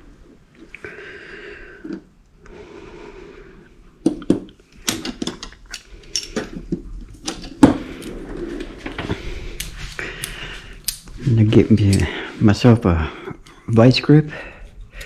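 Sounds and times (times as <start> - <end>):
metal hand tools clinking: 5.0 - 6.6.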